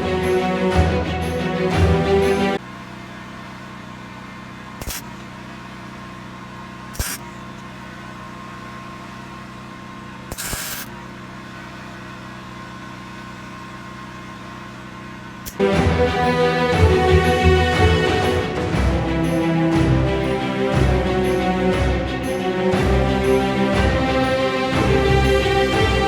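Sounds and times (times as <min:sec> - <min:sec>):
short hissing bursts: 0:07.0 - 0:07.2, 0:10.3 - 0:10.9
machine hum: 0:15.3 - 0:26.0.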